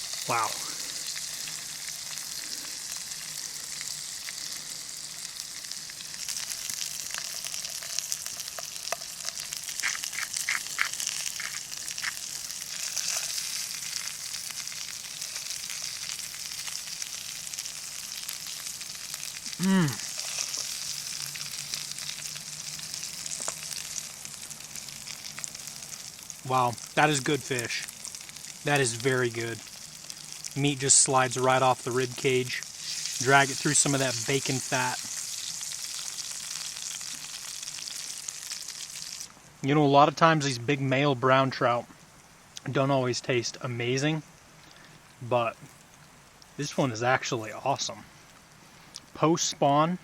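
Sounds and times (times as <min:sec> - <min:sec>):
fish sizzling in fat: 0:00.0 - 0:39.4.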